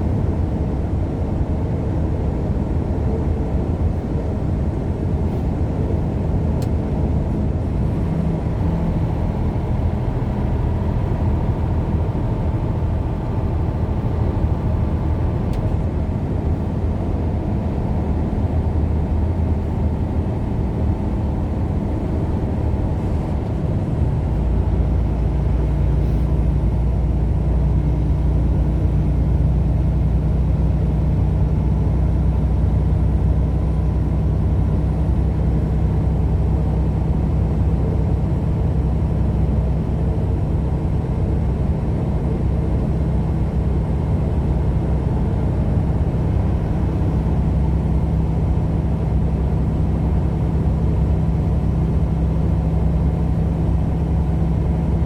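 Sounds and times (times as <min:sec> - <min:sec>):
car engine and road noise: 0:00.0 - 0:55.0.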